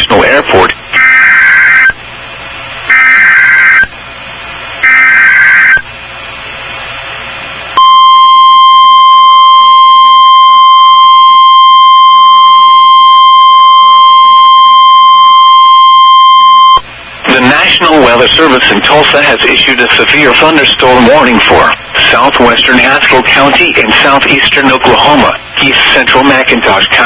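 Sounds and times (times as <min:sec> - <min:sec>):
screeching digital data bursts: 0:00.9 - 0:02.0, 0:02.9 - 0:03.9, 0:04.8 - 0:05.9.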